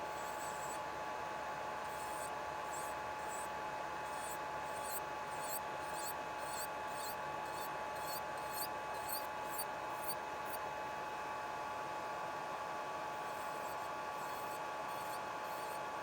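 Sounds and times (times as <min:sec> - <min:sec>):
small electric motor whine: 0:00.0 - 0:00.8, 0:01.8 - 0:10.6, 0:13.2 - 0:16.0
scratchy filing strokes: 0:00.1 - 0:00.8, 0:01.9 - 0:03.4, 0:04.1 - 0:10.2, 0:13.3 - 0:15.8.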